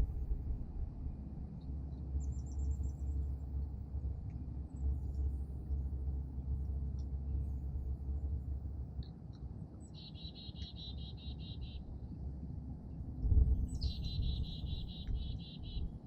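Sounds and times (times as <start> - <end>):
low outdoor rumble: 0.0 - 16.0
songbirds chipping and trilling: 9.8 - 11.9, 13.6 - 16.0.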